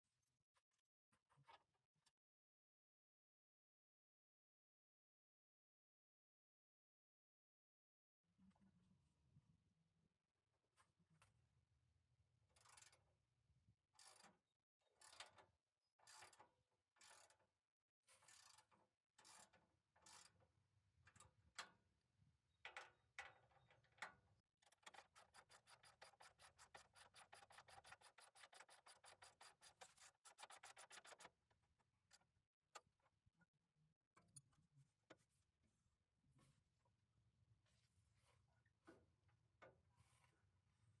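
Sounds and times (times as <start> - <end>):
faint ratchet wrench clicking: 14.0 - 14.3.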